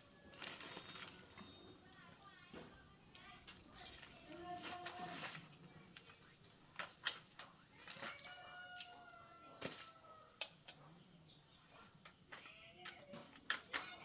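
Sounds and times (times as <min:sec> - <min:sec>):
tools clinking on metal: 0:03.5 - 0:05.0
rooster crowing: 0:08.0 - 0:10.4.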